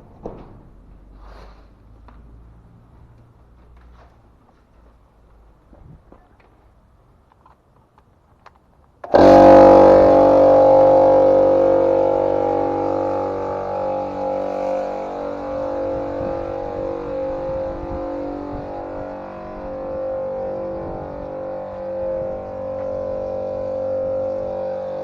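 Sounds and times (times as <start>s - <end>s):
circular saw motor whining: 9.0s - 25.0s.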